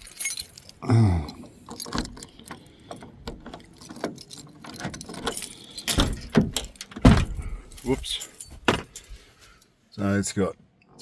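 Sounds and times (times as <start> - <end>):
keys clicking: 0.0 - 7.0.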